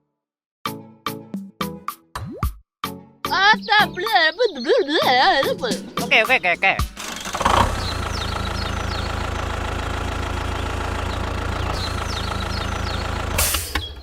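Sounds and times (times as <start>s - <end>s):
engine idling with low knocking: 6.8s - 14.0s.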